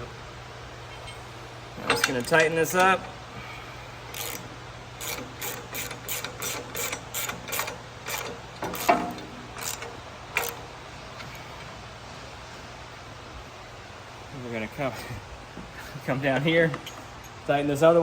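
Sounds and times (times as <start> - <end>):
ratchet wrench clicking: 4.1 - 10.6.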